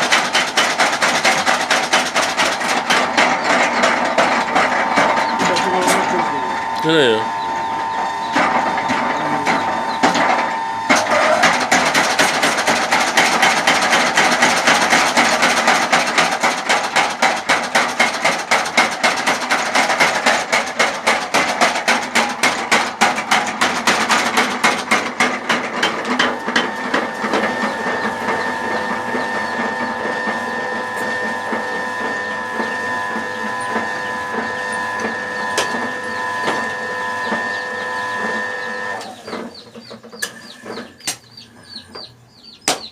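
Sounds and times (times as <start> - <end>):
power hammer striking metal: 0.0 - 31.2
machine whine: 0.0 - 42.6.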